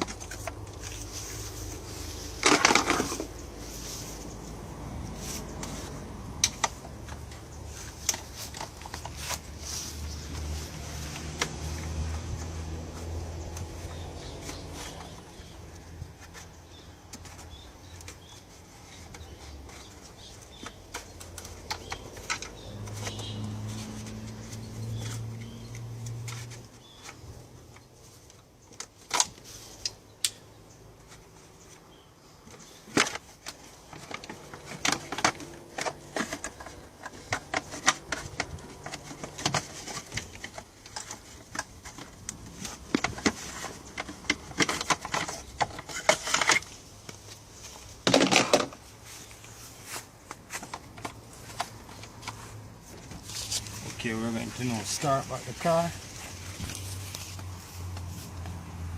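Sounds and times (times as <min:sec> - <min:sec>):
tools clicking and knocking: 0:19.0 - 0:23.3, 0:32.5 - 0:47.3.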